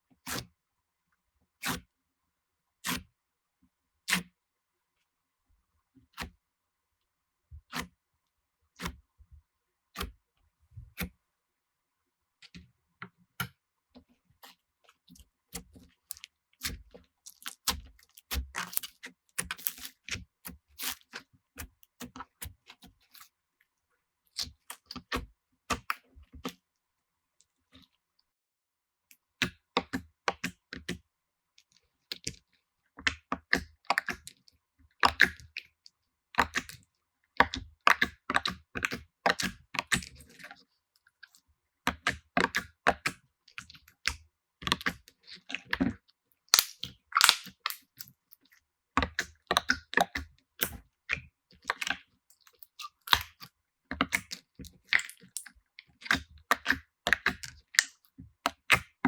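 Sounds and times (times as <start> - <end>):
slime clicks and pops: 46.6 - 47.8.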